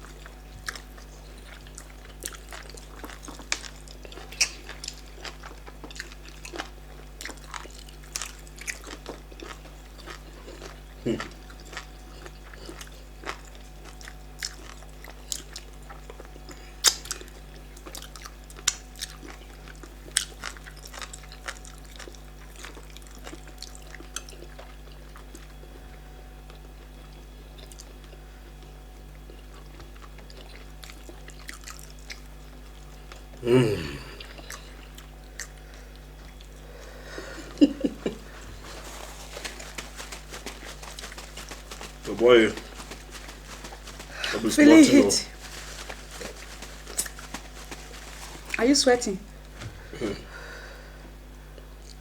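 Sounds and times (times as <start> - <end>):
wet chewing clicks: 0.0 - 25.6, 27.6 - 28.0, 29.3 - 33.3, 38.0 - 49.1
lip smacks: 3.4 - 5.0, 38.3 - 44.5, 45.3 - 48.6.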